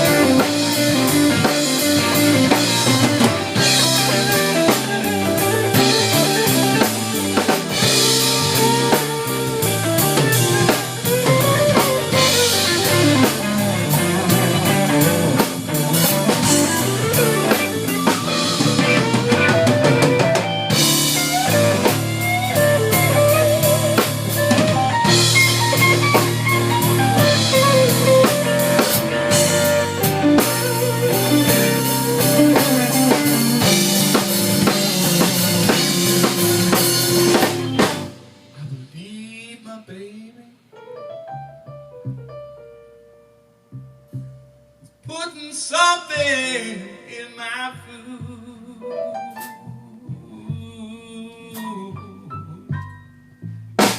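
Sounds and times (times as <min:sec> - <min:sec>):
drum kit beat: 0:00.0 - 0:39.3
guitar: 0:00.0 - 0:40.1, 0:43.7 - 0:53.9.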